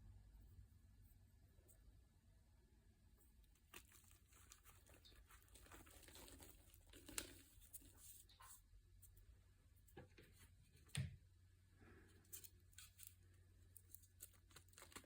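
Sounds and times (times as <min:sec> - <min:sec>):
faint crinkling: 0:03.1 - 0:11.0, 0:11.7 - 0:15.0.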